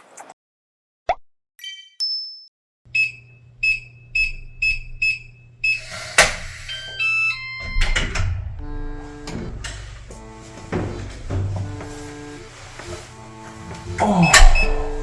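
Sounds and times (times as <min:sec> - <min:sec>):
appliance chime: 0:06.7 - 0:08.2, 0:14.2 - 0:15.0
short high beeps: 0:14.2 - 0:14.9.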